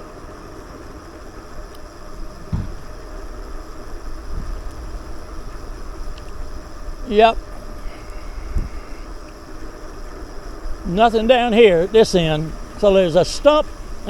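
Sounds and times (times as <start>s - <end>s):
bicycle tyres rolling on road: 0.0s - 14.0s
wind rumble on microphone: 0.0s - 14.0s
dull bump: 2.2s - 4.9s.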